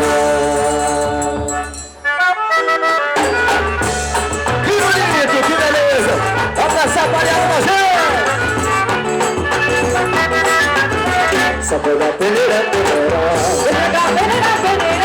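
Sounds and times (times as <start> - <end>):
folk band playing: 0.0 - 15.0.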